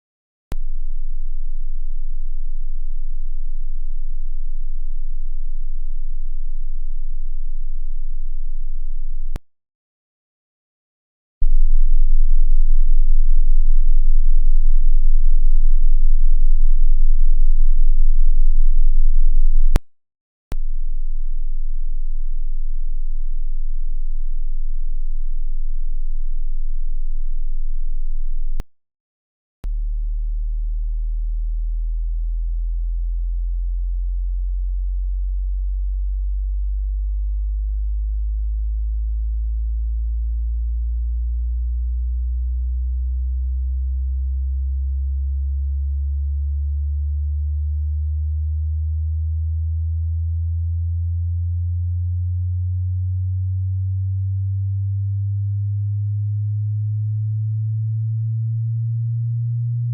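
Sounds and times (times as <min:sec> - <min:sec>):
rising sine test tone: 0:00.5 - 0:09.4, 0:11.4 - 0:19.8, 0:20.5 - 0:28.6, 0:29.6 - 0:59.9.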